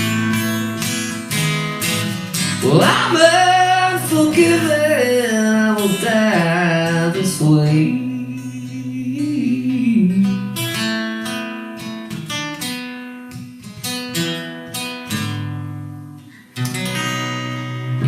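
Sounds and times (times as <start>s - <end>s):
strummed guitar chord: 0.0s - 11.2s
acoustic guitar notes plucked: 0.0s - 18.0s.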